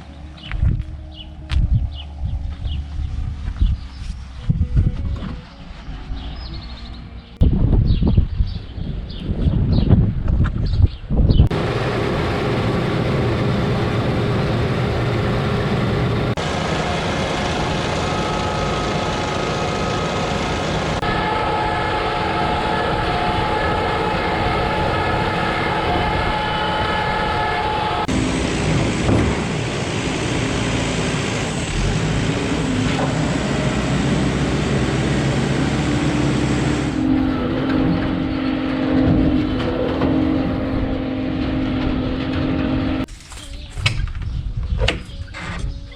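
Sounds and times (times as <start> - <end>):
heavy farm machinery engine drone: 11.5 - 43.1.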